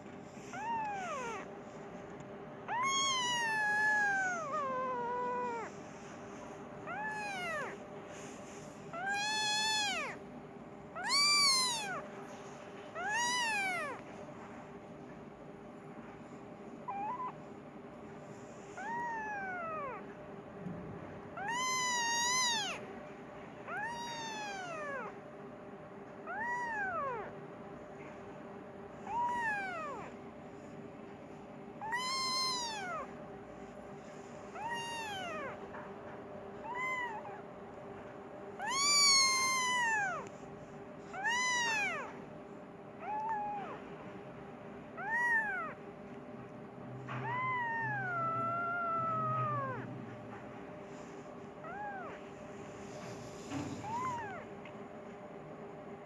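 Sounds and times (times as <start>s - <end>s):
kitten meowing: 0.4s - 1.5s, 2.7s - 5.8s, 6.8s - 7.8s, 8.9s - 10.2s, 11.0s - 12.1s, 12.9s - 14.1s, 16.8s - 17.4s, 18.7s - 20.1s, 21.4s - 22.8s, 23.7s - 25.2s, 26.2s - 27.4s, 29.0s - 30.2s, 31.8s - 33.2s, 34.5s - 35.9s, 36.6s - 37.5s, 38.6s - 40.3s, 41.1s - 42.2s, 43.0s - 43.8s, 45.0s - 45.8s, 47.1s - 50.0s, 51.6s - 52.3s, 53.6s - 54.5s.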